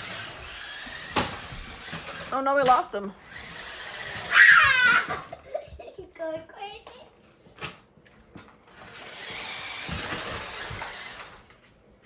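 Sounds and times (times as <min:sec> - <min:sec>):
toy truck motor whirring: 0:00.0 - 0:05.0, 0:08.7 - 0:11.6.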